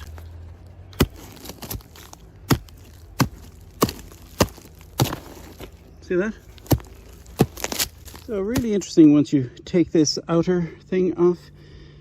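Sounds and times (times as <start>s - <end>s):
sharp blows on rotten wood: 0.0s - 5.8s, 6.5s - 8.8s.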